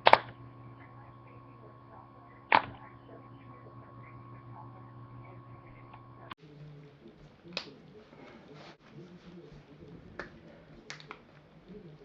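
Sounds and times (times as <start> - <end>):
electrical hum: 0.0 - 12.0.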